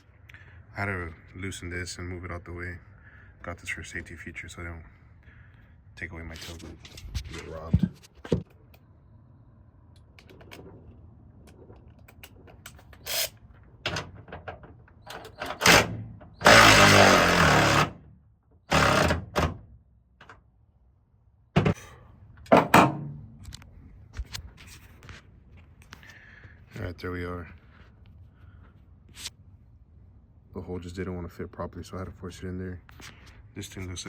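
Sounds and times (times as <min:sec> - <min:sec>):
handheld power tool bursts: 0:15.1 - 0:18.0, 0:18.7 - 0:19.5.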